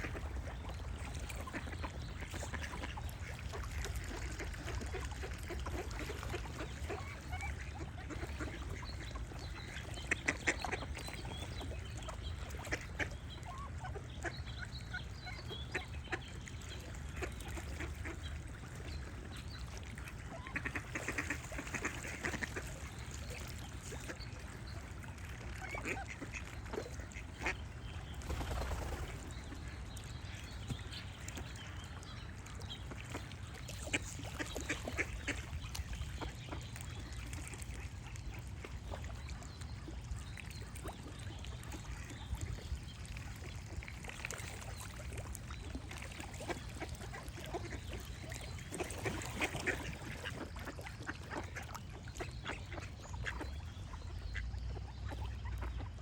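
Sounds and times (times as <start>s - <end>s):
ducks quacking: 20.2s - 22.9s, 25.6s - 30.9s.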